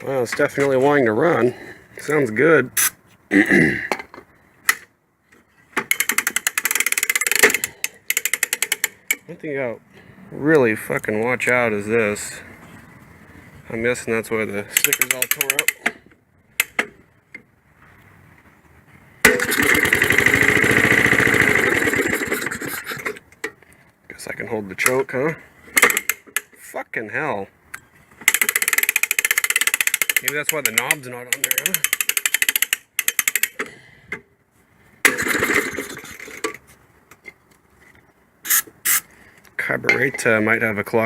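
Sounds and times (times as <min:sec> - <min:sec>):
impulse starter spinning engine: 0:19.3 - 0:23.2, 0:35.0 - 0:36.5
small engine running fast: 0:19.4 - 0:23.0
short sharp noises: 0:38.4 - 0:39.1.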